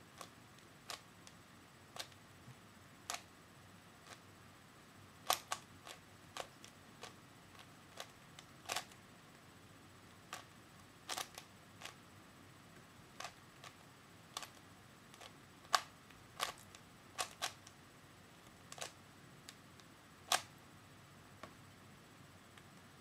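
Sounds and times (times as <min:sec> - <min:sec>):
puzzle cube plastic clacks: 0:05.3 - 0:09.0, 0:11.1 - 0:12.0, 0:13.2 - 0:17.7, 0:18.7 - 0:19.6, 0:20.3 - 0:20.5.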